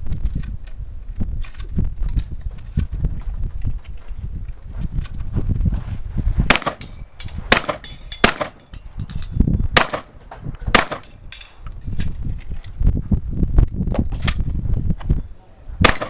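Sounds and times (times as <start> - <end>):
shotgun shots: 6.5 - 8.6, 9.8 - 11.2.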